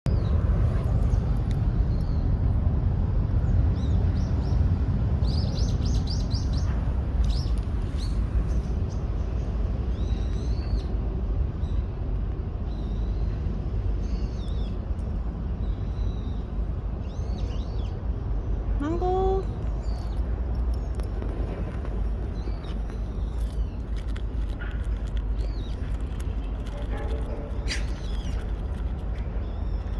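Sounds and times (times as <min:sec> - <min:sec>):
steady low rumble: 0:00.1 - 0:29.9
small birds chirping: 0:03.8 - 0:10.9, 0:18.8 - 0:29.9.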